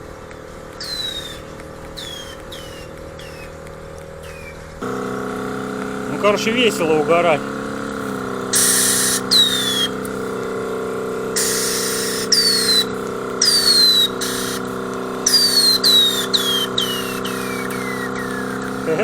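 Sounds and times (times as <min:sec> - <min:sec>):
air hissing: 0:00.0 - 0:04.8, 0:07.8 - 0:10.5, 0:11.4 - 0:19.0
valves clicking: 0:00.0 - 0:04.9, 0:07.7 - 0:10.6, 0:11.4 - 0:19.0
steady hum: 0:00.0 - 0:19.0
falling whistle: 0:00.8 - 0:03.5, 0:04.2 - 0:04.6, 0:08.6 - 0:10.0, 0:11.4 - 0:19.0.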